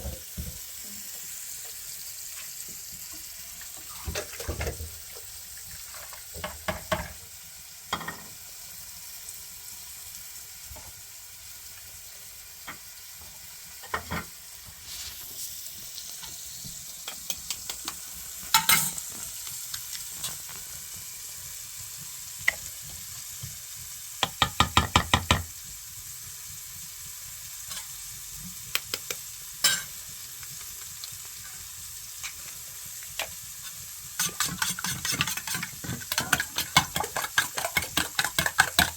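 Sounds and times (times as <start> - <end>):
food sizzling in a frying pan: 0.0 - 38.9
utensil knocking against pan: 24.2 - 25.5.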